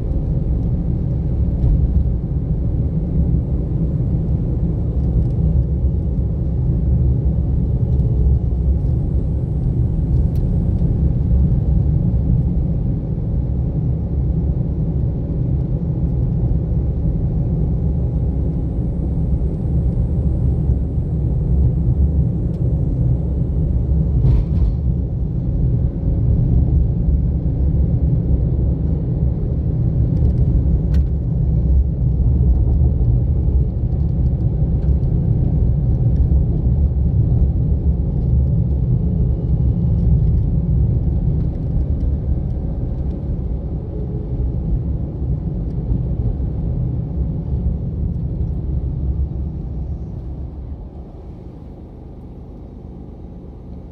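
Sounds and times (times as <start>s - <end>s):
car engine and tyres rumble: 0.0s - 53.9s.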